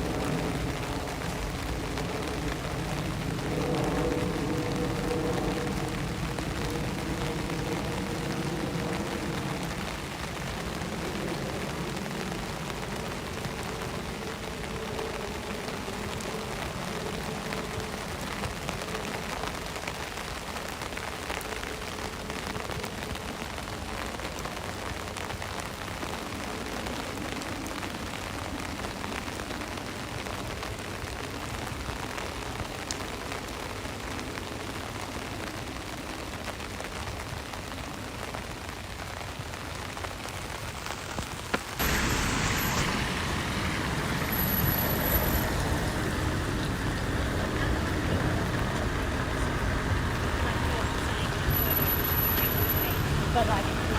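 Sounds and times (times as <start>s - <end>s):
rain on a street: 0.0s - 53.9s
passing road traffic: 40.8s - 53.9s.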